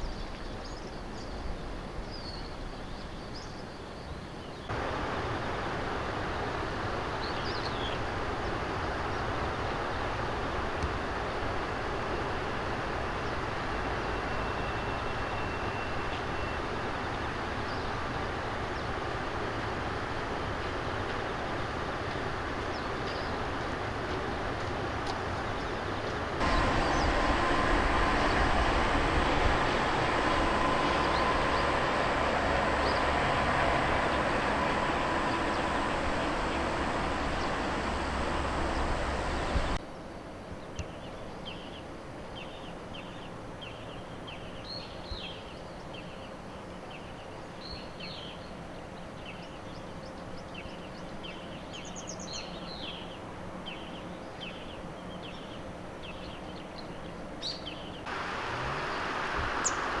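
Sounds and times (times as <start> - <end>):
loud steady rushing noise: 4.7 - 39.8, 58.0 - 60.0
small birds chirping: 6.2 - 10.2, 20.6 - 39.8, 58.8 - 60.0.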